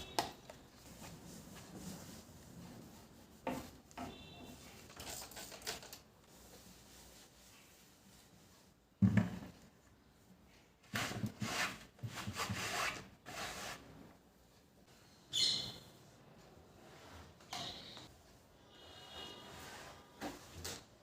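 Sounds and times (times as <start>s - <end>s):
rubbing and rustling: 0.3s - 9.0s
thump: 9.0s - 9.5s.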